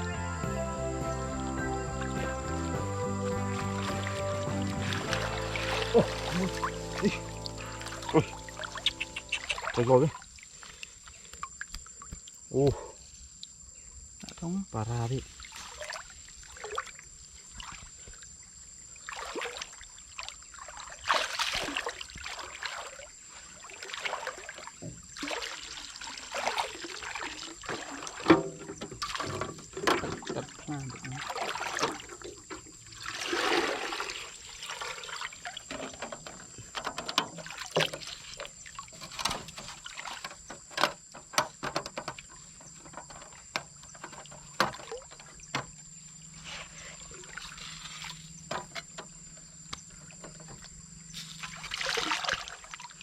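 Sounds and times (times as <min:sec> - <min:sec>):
water splashing and trickling: 0:00.0 - 0:53.0
sharp knocks and clicks: 0:35.8 - 0:38.0, 0:39.1 - 0:45.7.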